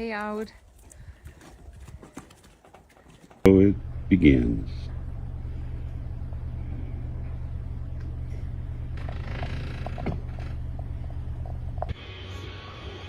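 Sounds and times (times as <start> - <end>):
motor vehicle engine droning: 3.4 - 13.0.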